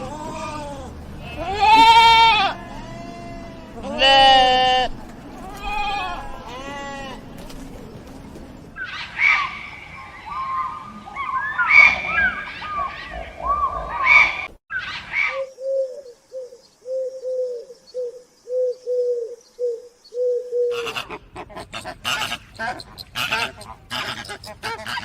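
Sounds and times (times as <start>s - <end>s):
many birds chirping: 0.0s - 15.8s, 17.8s - 25.0s
low dove cooing: 15.3s - 25.0s.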